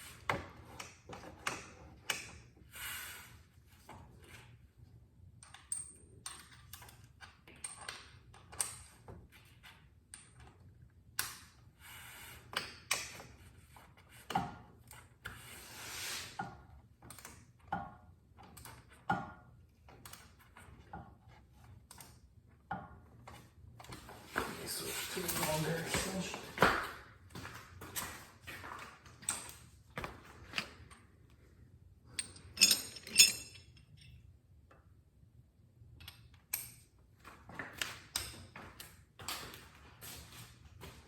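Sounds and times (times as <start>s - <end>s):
metal hand tools clinking: 32.2s - 34.1s.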